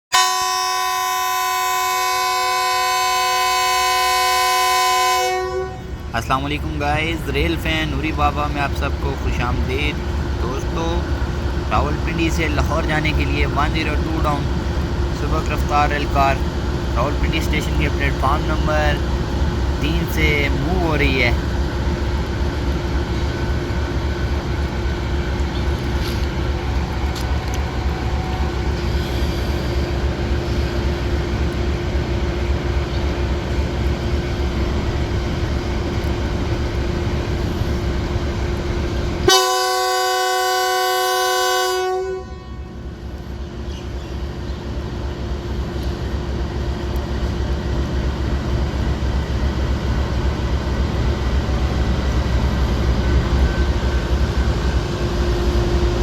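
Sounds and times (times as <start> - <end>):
train horn blast: 0.1 - 6.2, 39.2 - 42.9, 55.0 - 56.0
diesel railcar rumbling: 0.1 - 56.0.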